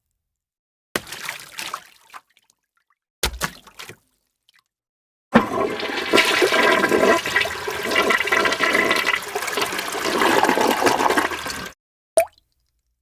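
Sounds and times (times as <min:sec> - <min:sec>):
water rushing: 0:05.4 - 0:11.7.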